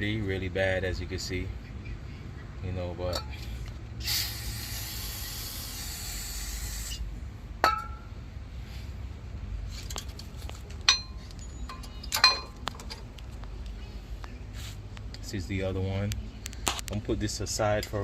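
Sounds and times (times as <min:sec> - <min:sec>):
aerosol spray hissing: 0:04.0 - 0:07.0
metallic clinks: 0:09.8 - 0:13.1.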